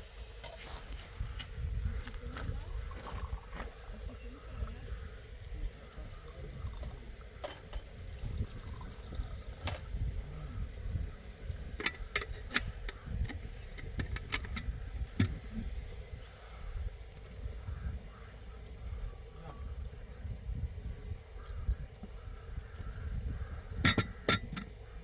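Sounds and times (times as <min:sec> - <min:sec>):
steady low rumble: 0:00.0 - 0:25.0
sharp knocks and clicks: 0:11.8 - 0:15.4, 0:23.8 - 0:24.7.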